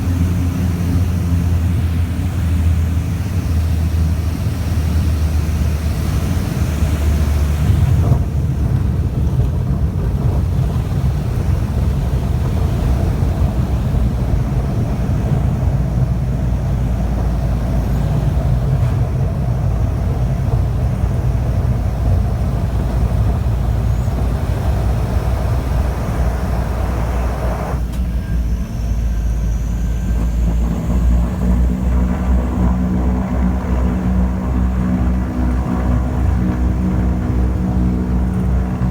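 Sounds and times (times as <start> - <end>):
turboprop plane engine: 0.0 - 38.9.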